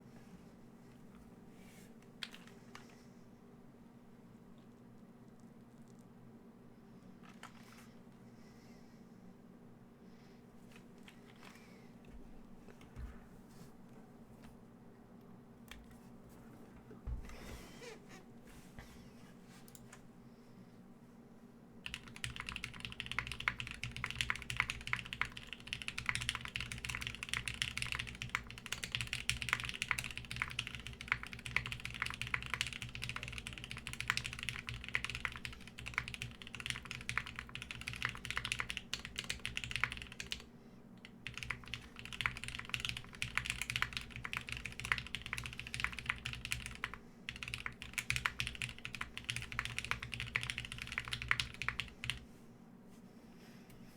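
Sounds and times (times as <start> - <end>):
mechanical keyboard typing: 21.8 - 52.2.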